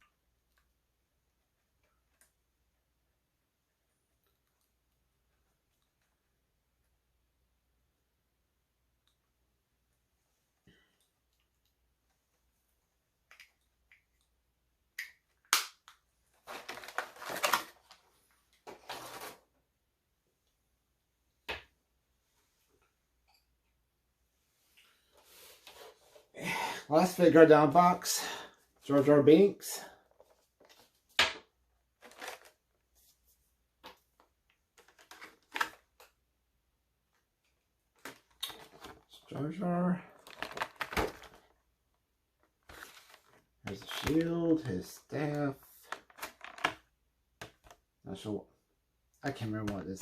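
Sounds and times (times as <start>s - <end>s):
sharp plastic snap: 15.0s - 16.0s
box packaging rustling and scraping: 16.4s - 18.0s, 18.6s - 19.5s, 32.0s - 33.2s, 42.7s - 44.7s
packaging crinkling and rustling: 16.4s - 18.1s, 32.0s - 32.6s, 40.1s - 41.6s.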